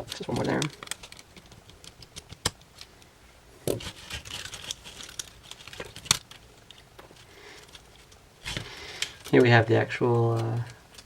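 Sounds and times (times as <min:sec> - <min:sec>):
small tools clicking and scraping: 0:03.7 - 0:11.0.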